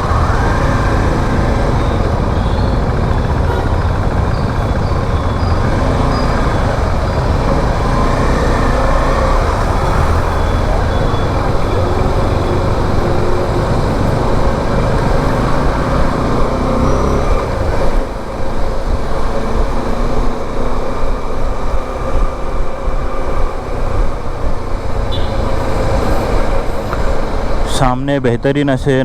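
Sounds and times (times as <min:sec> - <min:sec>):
wind rush on microphone: 0:00.0 - 0:27.7
motorcycle engine rumble: 0:00.0 - 0:28.1
road traffic noise: 0:00.0 - 0:29.0.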